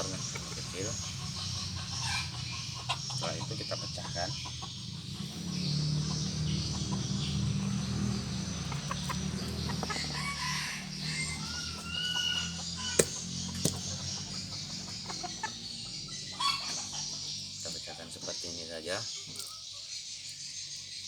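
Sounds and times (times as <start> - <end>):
chickens clucking: 0.0 - 20.9
sharp knocks: 13.0 - 14.0.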